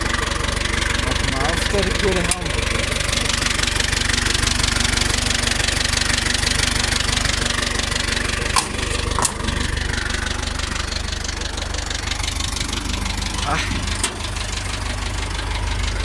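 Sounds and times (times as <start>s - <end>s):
tractor diesel engine running: 0.0s - 16.0s
sharp clicks: 13.8s - 14.4s.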